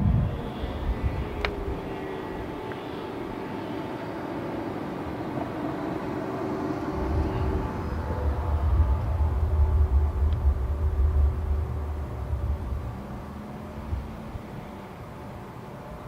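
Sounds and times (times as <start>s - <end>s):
low rumble: 0.0s - 2.6s, 6.7s - 14.9s.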